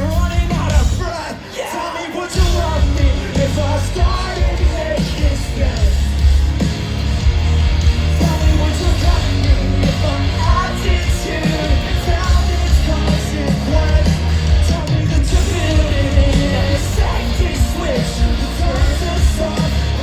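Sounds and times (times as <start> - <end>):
live rock band playing: 0.0 - 20.0
person singing: 8.2 - 20.0.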